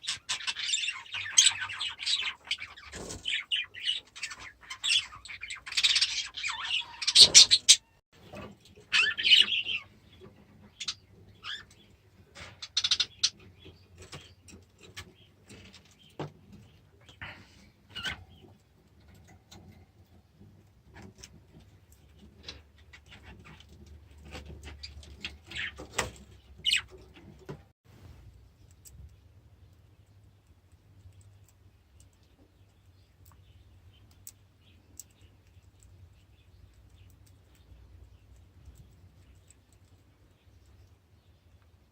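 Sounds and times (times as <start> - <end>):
budgies chirping: 0.0 - 18.6, 20.9 - 27.3
small clicks and scratches: 18.0 - 41.8.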